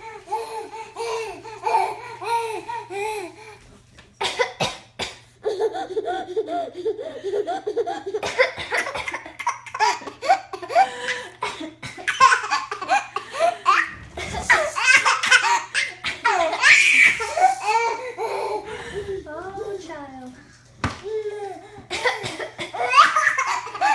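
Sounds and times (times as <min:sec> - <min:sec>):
baby laughing: 0:00.0 - 0:03.3, 0:05.4 - 0:19.1, 0:21.1 - 0:23.9
woman coughing: 0:04.2 - 0:05.3, 0:08.1 - 0:13.5, 0:21.9 - 0:23.9.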